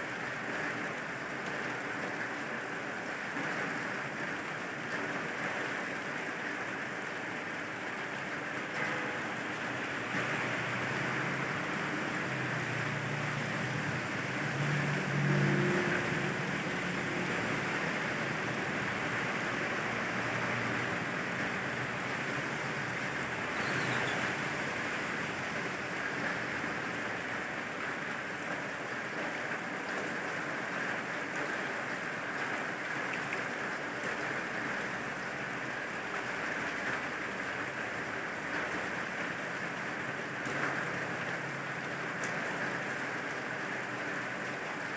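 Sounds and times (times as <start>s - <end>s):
steady rain falling: 0.0s - 44.9s
passing vehicle rumble: 10.0s - 27.3s.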